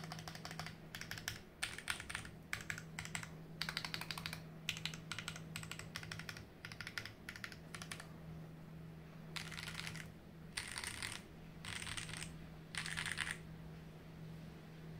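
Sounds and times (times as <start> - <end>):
mechanical keyboard typing: 0.0 - 8.1, 9.4 - 13.4
faint steady hum: 0.0 - 14.9.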